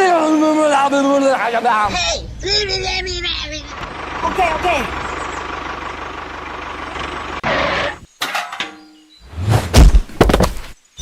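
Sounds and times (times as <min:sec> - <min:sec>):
loud low thuds: 0:09.5 - 0:10.7.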